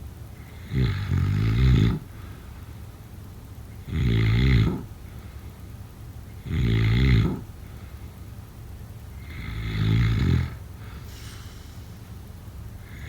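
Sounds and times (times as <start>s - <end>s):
rattling snore: 0.6s - 2.1s, 3.8s - 5.0s, 6.4s - 7.6s, 9.2s - 11.4s.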